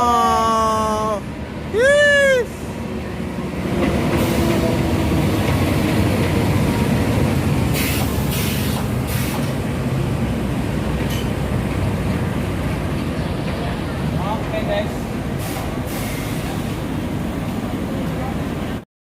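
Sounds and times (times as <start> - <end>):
train rumbling past: 0.0 - 18.8.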